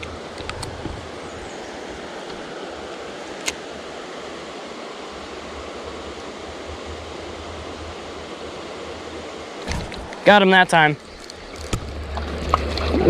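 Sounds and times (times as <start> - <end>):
water running over rocks: 9.3 - 13.0.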